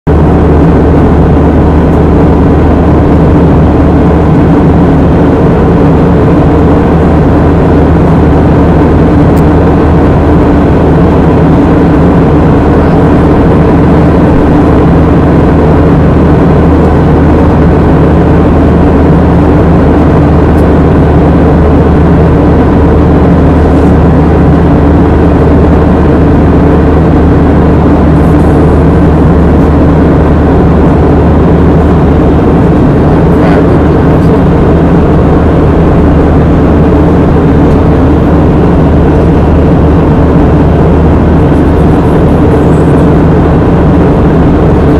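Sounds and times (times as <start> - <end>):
airliner cabin drone: 0.0 - 44.9.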